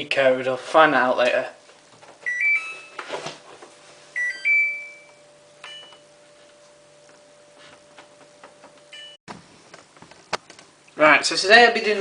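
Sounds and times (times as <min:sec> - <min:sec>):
faint steady hum: 0:00.0 - 0:12.0
washing machine beeps: 0:02.2 - 0:03.1, 0:04.1 - 0:06.1, 0:08.9 - 0:09.2.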